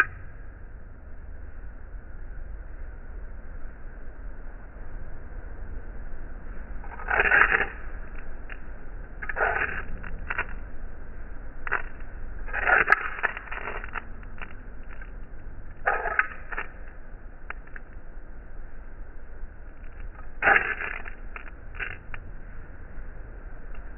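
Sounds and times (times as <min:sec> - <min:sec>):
sharp clicks: 0:09.2 - 0:10.6, 0:11.7 - 0:18.0, 0:19.8 - 0:22.2.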